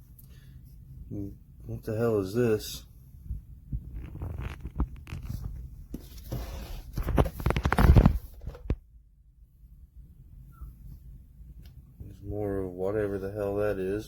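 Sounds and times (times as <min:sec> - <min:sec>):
rustling: 0:03.8 - 0:08.8.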